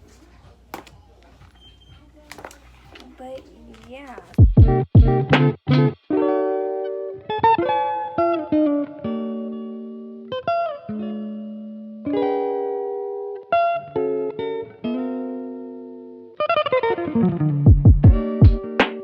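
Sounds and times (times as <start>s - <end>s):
plucked guitar music: 4.4s - 19.0s.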